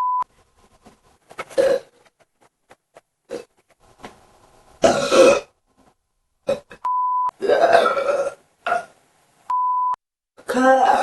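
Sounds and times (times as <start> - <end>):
person burping: 1.5 - 2.0, 4.8 - 5.6, 6.4 - 9.0, 10.4 - 11.0
short steady beep: 6.8 - 7.3, 9.5 - 10.0.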